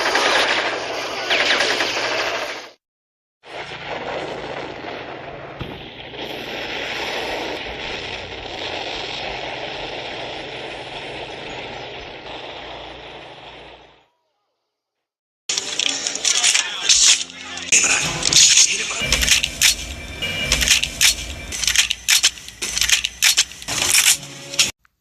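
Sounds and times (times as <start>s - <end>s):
engine-like rush of noise: 17.8s - 24.7s
low hum: 18.0s - 24.7s.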